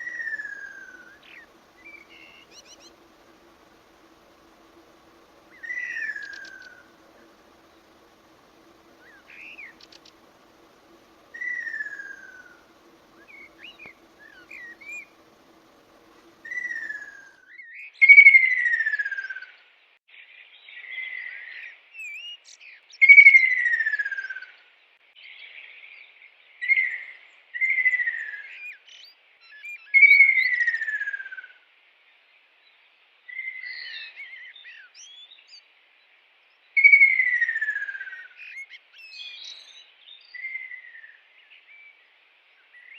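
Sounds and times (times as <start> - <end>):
bird whistling descending notes: 0.0 - 17.5
faint low hum: 0.0 - 17.5
soft bird chirps: 0.0 - 17.5.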